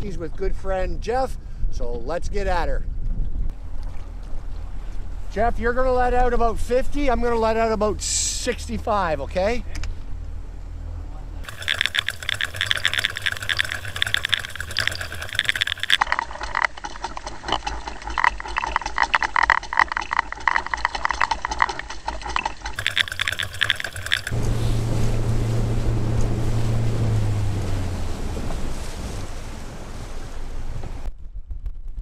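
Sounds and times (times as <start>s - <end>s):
wind noise: 0.0s - 5.3s, 11.4s - 32.0s
boat motor hum: 3.5s - 31.1s
fishing reel clickers ticking: 11.4s - 24.4s.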